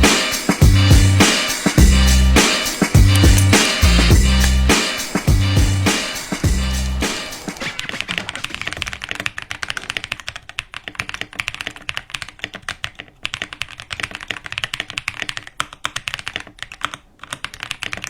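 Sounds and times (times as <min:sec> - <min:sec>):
mechanical keyboard typing: 0:09.0 - 0:18.0.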